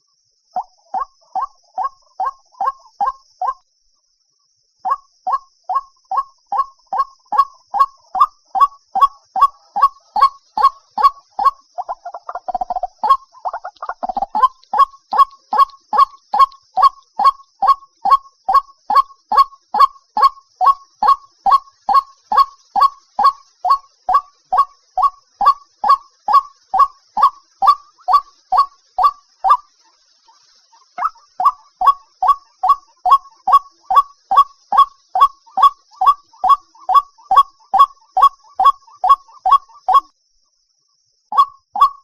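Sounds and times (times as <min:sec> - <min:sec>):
faint high hiss: 0:09.5 - 0:38.6.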